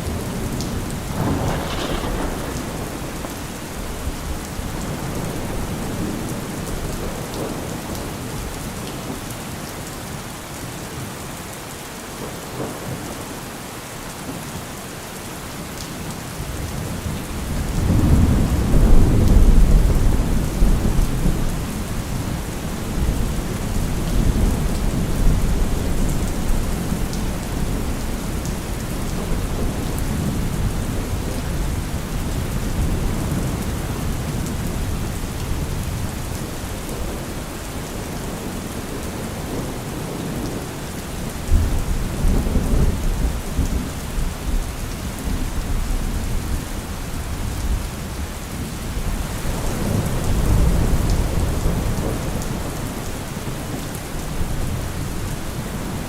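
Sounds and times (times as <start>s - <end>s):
rolling thunder: 0.0s - 7.7s, 16.8s - 37.4s
steady rain: 0.0s - 56.0s.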